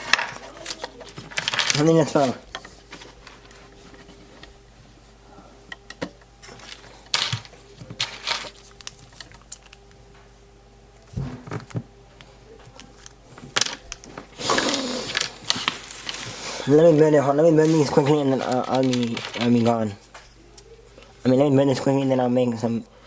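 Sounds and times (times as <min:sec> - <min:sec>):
crinkling rustles: 0:00.0 - 0:10.2, 0:11.0 - 0:21.9
faint steady hum: 0:00.0 - 0:23.0.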